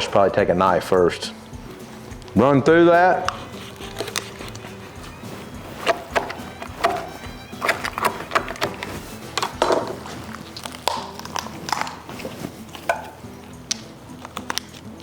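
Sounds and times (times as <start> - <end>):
background music: 0.0 - 15.0
knife crunching through bone: 3.2 - 5.2, 5.8 - 15.0.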